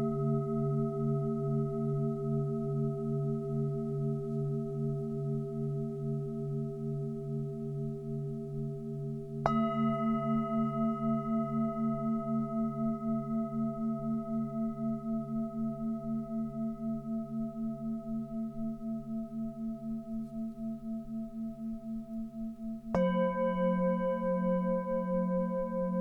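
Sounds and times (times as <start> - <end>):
singing bowls ringing: 22.9 - 26.0.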